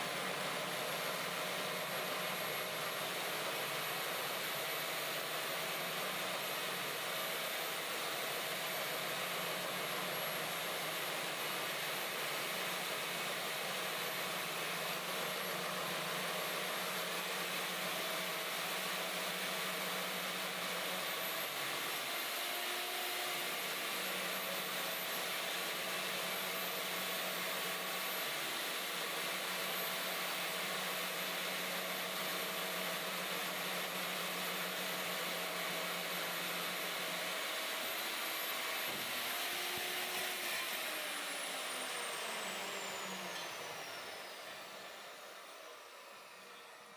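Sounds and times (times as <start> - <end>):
core drill motor whining: 0.0 - 46.9.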